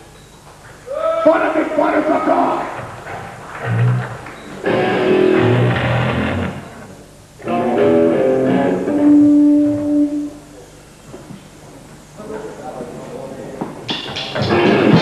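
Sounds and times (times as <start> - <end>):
distorted electric guitar chords: 3.6 - 10.5, 13.9 - 15.0.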